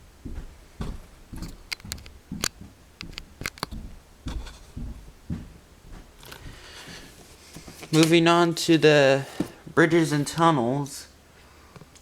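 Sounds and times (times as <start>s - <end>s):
soft low thumps: 0.0s - 7.0s.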